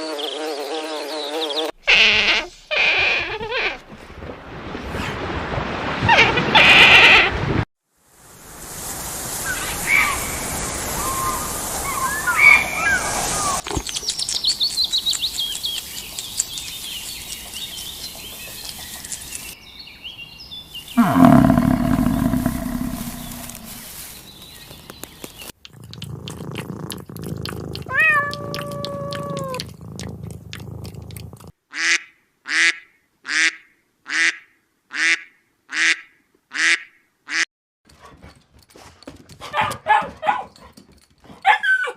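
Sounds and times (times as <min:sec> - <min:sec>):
short animal calls: 0:21.0 - 0:23.8
loud low-pitched animal call: 0:21.0 - 0:23.9.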